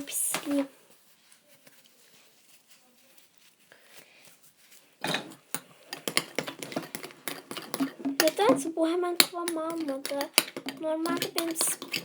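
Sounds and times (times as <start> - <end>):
spoon stirring thick mixture: 4.6 - 12.0
loud spoon scrape: 5.0 - 12.0.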